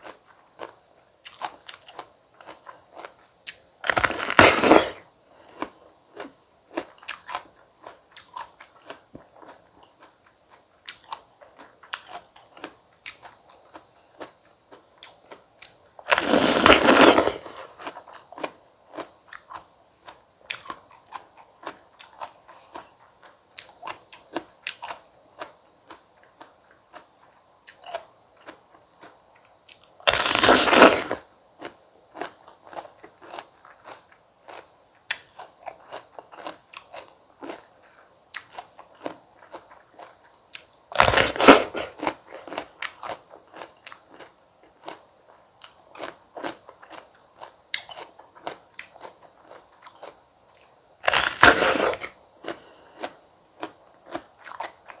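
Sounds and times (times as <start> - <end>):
crunching bites of fruit: 0.0 - 10.2, 10.9 - 45.0, 45.6 - 55.0
soft wet chewing: 31.6 - 55.0.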